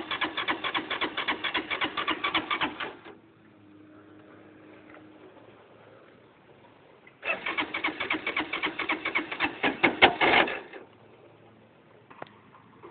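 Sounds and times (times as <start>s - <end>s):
motorcycle engine cranking: 0.0s - 3.2s, 7.2s - 10.9s.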